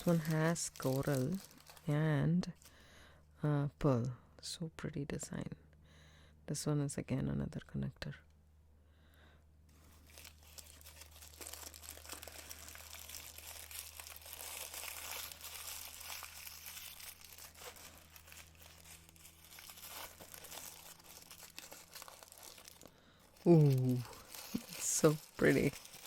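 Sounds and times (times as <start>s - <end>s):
packing material crinkling: 0.0s - 2.7s, 9.7s - 26.0s.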